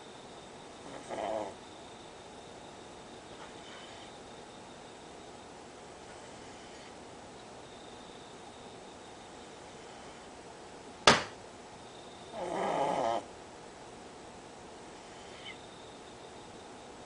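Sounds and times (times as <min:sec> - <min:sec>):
dog snoring: 0:00.8 - 0:01.6, 0:03.4 - 0:04.2, 0:06.0 - 0:07.0, 0:12.3 - 0:13.3, 0:15.0 - 0:15.7.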